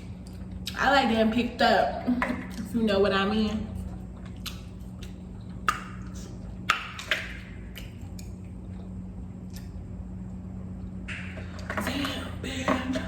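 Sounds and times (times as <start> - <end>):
steady low hum: 0.0 - 13.0
mouth clicks and smacks: 4.2 - 8.6.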